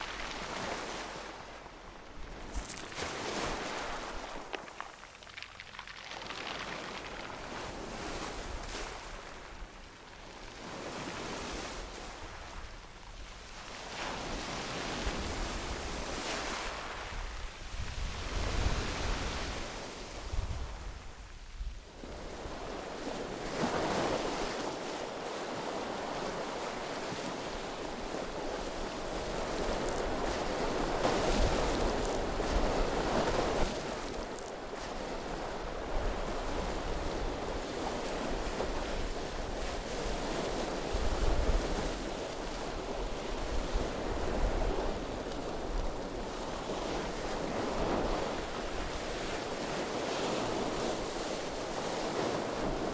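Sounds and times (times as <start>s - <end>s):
waves washing on gravel beach: 0.0s - 9.7s, 13.6s - 21.0s, 22.1s - 52.9s
wind rumbling on microphone: 0.0s - 52.9s.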